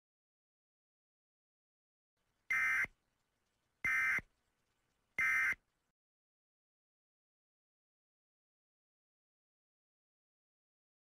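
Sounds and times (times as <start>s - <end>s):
buzzy alert data bursts: 3.9s - 4.2s.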